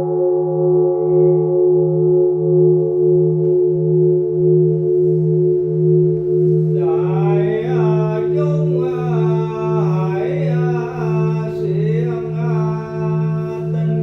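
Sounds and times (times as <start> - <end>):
pulsing bell drone: 0.0 - 14.0
person chanting: 6.8 - 14.0.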